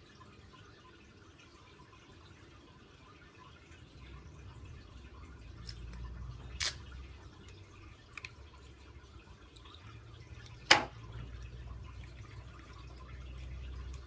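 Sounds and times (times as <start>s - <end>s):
low steady hum: 1.4s - 14.0s
parts tapping and clicking: 10.5s - 11.0s.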